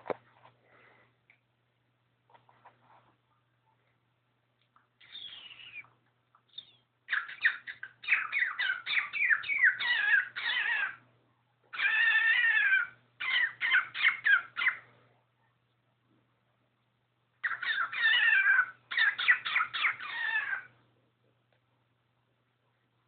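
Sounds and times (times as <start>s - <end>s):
cockatiel chirping: 5.0s - 5.9s, 6.5s - 11.0s, 11.7s - 14.8s, 17.4s - 20.7s.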